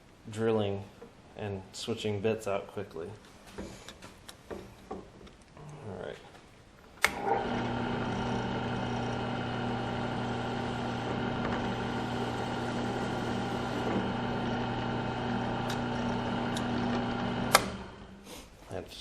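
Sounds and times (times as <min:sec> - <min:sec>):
drill press motor humming: 0:07.0 - 0:18.2.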